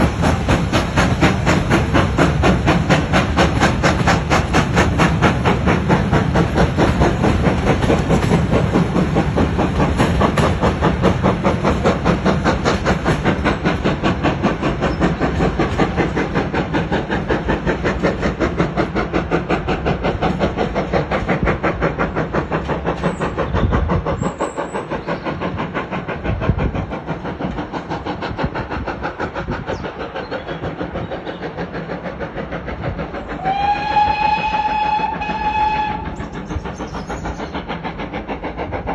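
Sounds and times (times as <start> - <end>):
steam locomotive exhaust beats: 0.0 - 38.9
steam whistle: 33.4 - 36.1.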